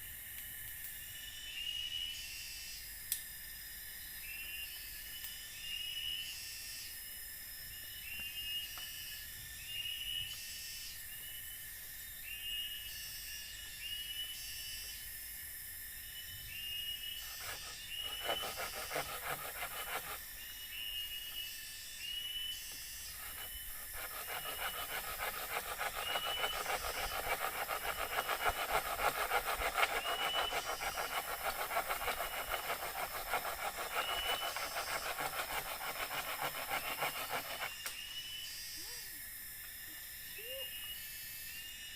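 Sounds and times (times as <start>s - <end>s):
high insect drone: 0.0s - 41.9s
dense fast rasping: 17.2s - 20.2s, 23.2s - 37.7s.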